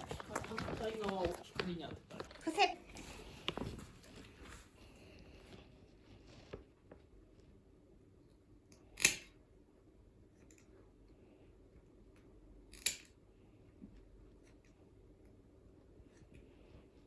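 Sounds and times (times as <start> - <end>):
nail clipper clips: 8.7 - 9.4, 12.7 - 13.2.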